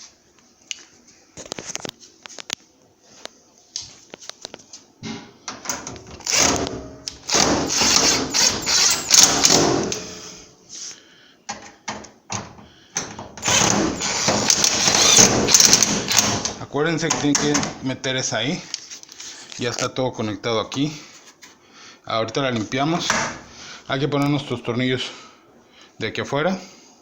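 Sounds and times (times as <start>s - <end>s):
clicks and knocks of panels: 16.2s - 17.8s.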